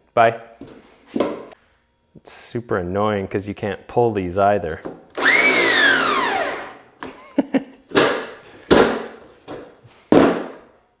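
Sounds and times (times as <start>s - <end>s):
power screw gun motor whining: 5.2s - 6.8s.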